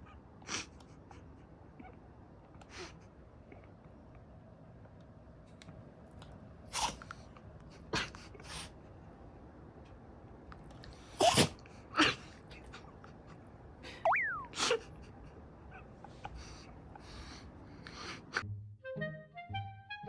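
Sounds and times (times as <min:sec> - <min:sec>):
dog sneezing: 0:06.7 - 0:07.2, 0:11.0 - 0:12.3.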